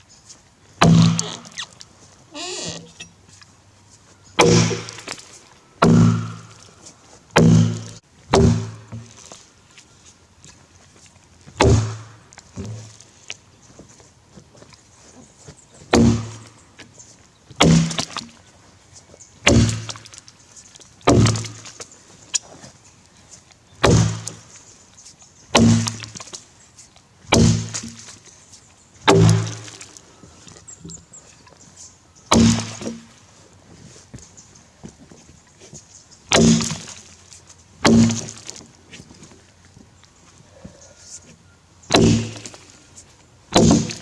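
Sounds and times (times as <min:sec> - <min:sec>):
axe chopping log: 0:00.8 - 0:01.6, 0:04.4 - 0:06.7, 0:07.4 - 0:09.2, 0:11.6 - 0:12.9, 0:15.9 - 0:16.5, 0:17.6 - 0:18.4, 0:19.4 - 0:20.1, 0:21.1 - 0:21.7, 0:23.8 - 0:24.4, 0:25.6 - 0:26.2, 0:27.3 - 0:28.0, 0:29.0 - 0:29.9, 0:32.3 - 0:33.1, 0:36.3 - 0:37.0, 0:37.8 - 0:38.6, 0:41.9 - 0:42.6, 0:43.5 - 0:44.0.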